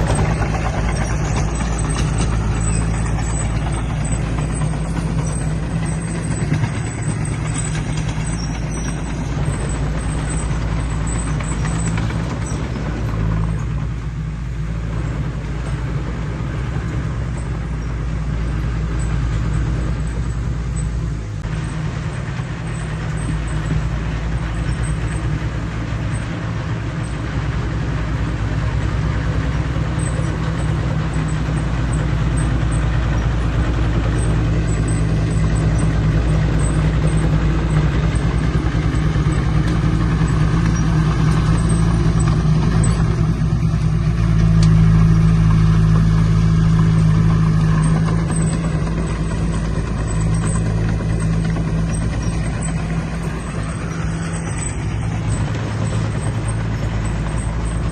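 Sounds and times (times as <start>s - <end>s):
heavy diesel engine droning: 0.0s - 57.9s.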